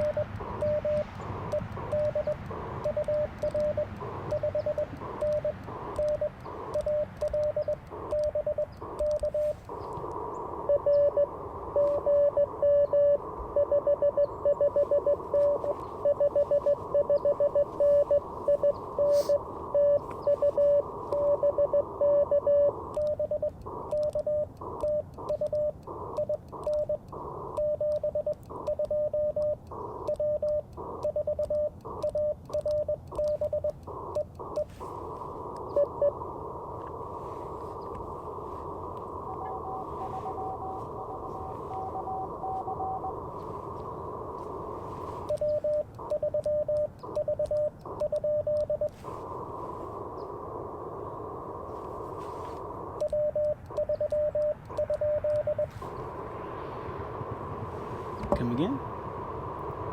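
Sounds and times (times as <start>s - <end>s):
morse code beeps: 0.0s - 36.3s, 37.0s - 49.3s, 52.2s - 55.9s
radio hiss: 0.0s - 59.9s.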